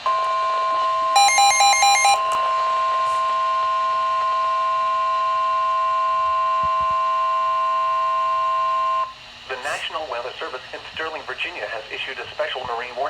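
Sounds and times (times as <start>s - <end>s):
rapid beeps: 1.2s - 2.3s
two-pitch alert tone: 1.2s - 2.3s.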